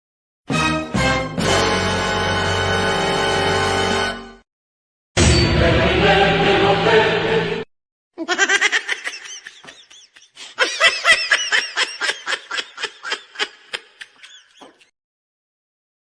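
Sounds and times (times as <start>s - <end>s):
music: 0.5s - 4.4s, 5.2s - 7.7s
laughter in short pulses: 8.2s - 14.9s.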